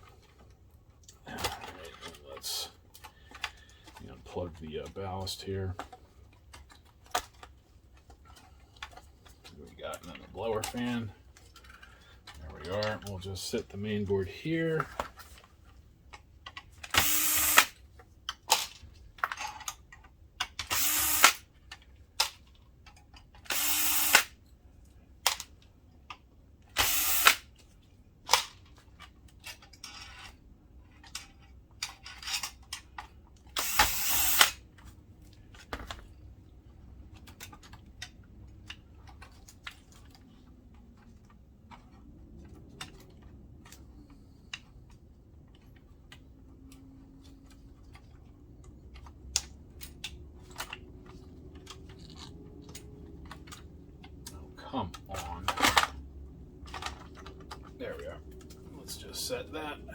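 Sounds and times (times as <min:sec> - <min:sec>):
parts clicking and tapping: 0:00.0 - 0:59.1
electric screwdriver whirring: 0:16.9 - 0:17.8, 0:20.6 - 0:21.5, 0:23.4 - 0:24.4, 0:26.7 - 0:27.5, 0:33.5 - 0:34.6.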